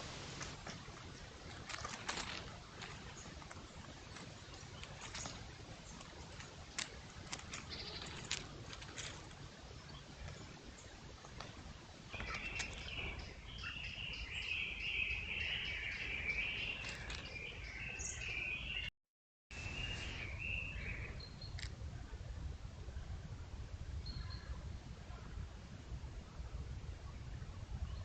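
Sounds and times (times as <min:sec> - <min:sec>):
low wind rumble: 0:00.0 - 0:18.9, 0:19.6 - 0:28.0
bird calls: 0:00.6 - 0:18.9.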